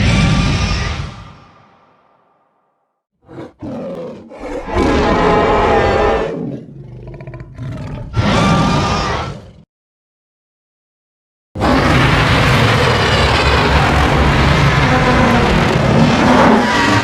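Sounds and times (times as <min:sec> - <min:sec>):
monster growling: 0:03.2 - 0:09.6, 0:11.6 - 0:17.0
monster roaring: 0:03.2 - 0:09.6, 0:11.6 - 0:17.0.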